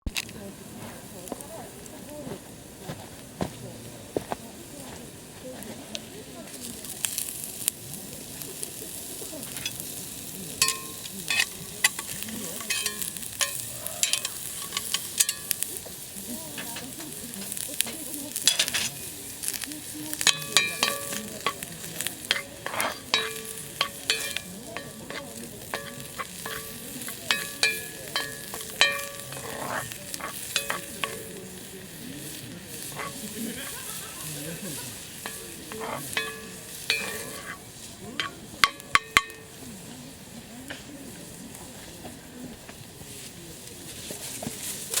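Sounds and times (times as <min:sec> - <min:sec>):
food sizzling in a skillet: 0:00.0 - 0:45.0
metal utensil tapping pan: 0:08.6 - 0:39.9.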